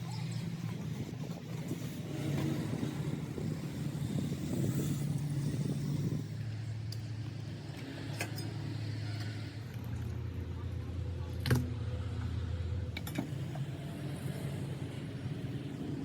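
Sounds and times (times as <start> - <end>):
engine running with low hum: 0.0 - 16.0.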